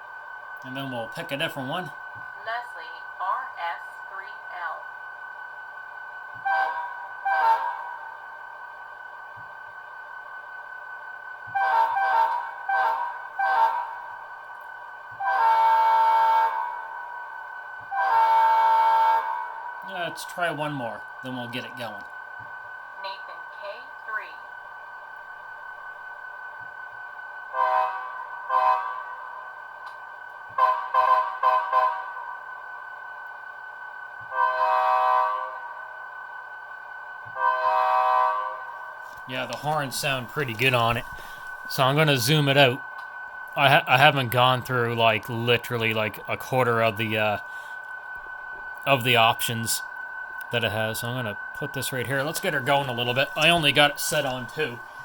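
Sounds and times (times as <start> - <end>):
steady idling hum: 0.0 - 16.2, 37.3 - 55.0
model train air horn blasts: 6.4 - 8.0, 11.5 - 14.1, 15.2 - 17.0, 17.9 - 19.7, 27.5 - 29.2, 30.5 - 32.2, 34.3 - 35.7, 37.3 - 41.7.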